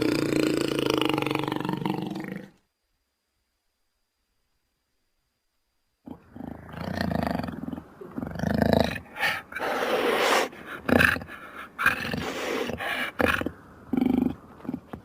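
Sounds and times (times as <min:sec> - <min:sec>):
creature growls and roars: 0:00.0 - 0:02.6, 0:06.1 - 0:14.9.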